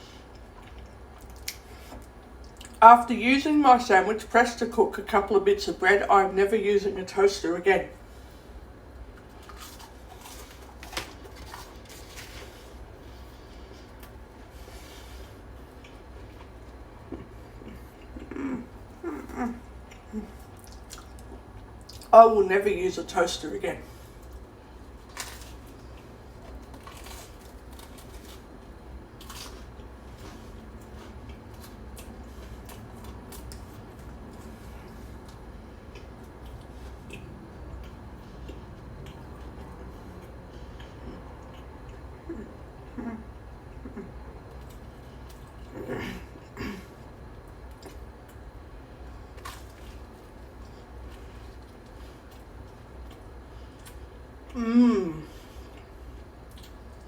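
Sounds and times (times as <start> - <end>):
low steady hum: 0.0 - 57.0
person chewing toast: 0.2 - 2.8, 8.1 - 22.1, 24.0 - 42.4, 43.6 - 54.6.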